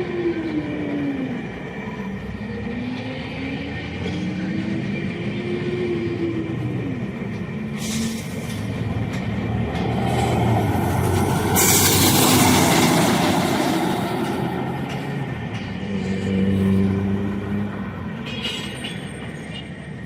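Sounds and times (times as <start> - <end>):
bus diesel engine running: 7.0 - 16.2
compressed air hiss: 7.8 - 8.7.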